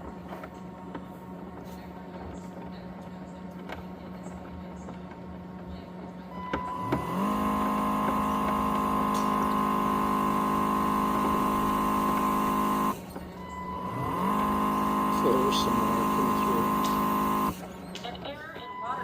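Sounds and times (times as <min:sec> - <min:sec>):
low motor hum: 0:00.0 - 0:19.0
motor high-pitched whine: 0:06.3 - 0:19.0.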